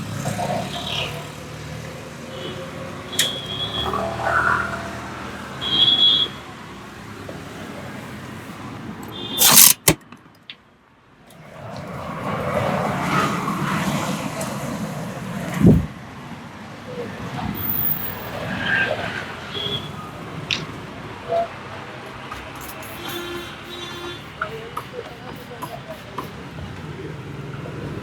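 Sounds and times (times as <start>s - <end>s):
roadside traffic noise: 0.0s - 28.0s
loud sharp noise: 9.2s - 10.0s.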